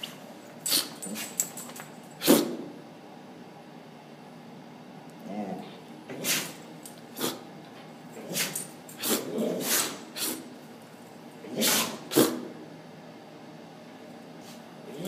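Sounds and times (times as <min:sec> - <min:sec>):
dog sneezing: 0:00.6 - 0:01.4, 0:02.2 - 0:02.7, 0:06.1 - 0:07.5, 0:08.2 - 0:10.6, 0:11.5 - 0:12.5.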